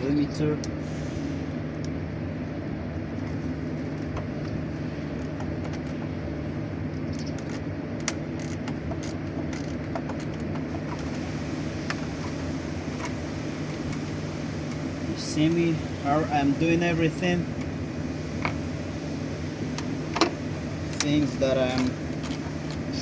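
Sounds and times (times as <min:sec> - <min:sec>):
low mechanical hum: 0:00.0 - 0:23.0
socket wrench clicking on bolts: 0:07.1 - 0:11.1.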